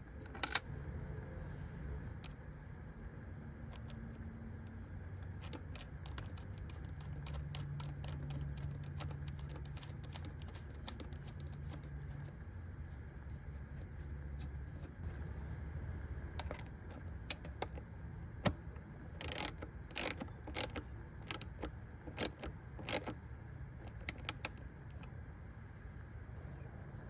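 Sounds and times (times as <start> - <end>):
low steady hum: 0.0 - 27.0
small parts and tools rattling: 0.2 - 0.7, 3.7 - 12.4, 18.5 - 25.1.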